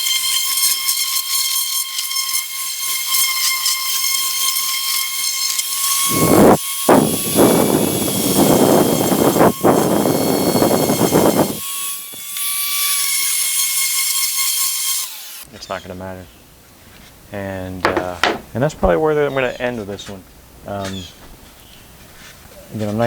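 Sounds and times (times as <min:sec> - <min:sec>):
sander rasping on wood: 0:00.0 - 0:17.2, 0:17.8 - 0:19.0
power sander whining: 0:05.2 - 0:13.4.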